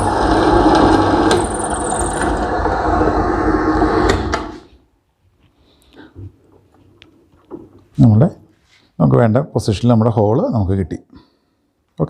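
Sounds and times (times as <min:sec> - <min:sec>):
drilling machine drilling: 0:00.0 - 0:04.4.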